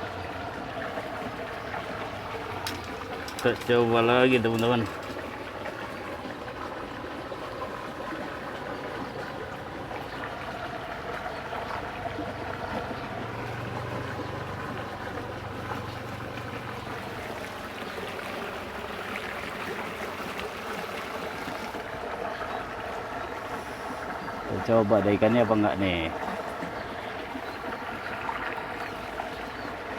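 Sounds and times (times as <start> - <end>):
water rushing in a ditch: 0.0 - 29.9.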